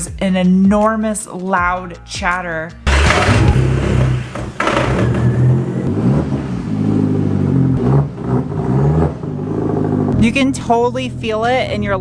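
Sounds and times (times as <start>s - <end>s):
car engine running: 2.9s - 10.4s.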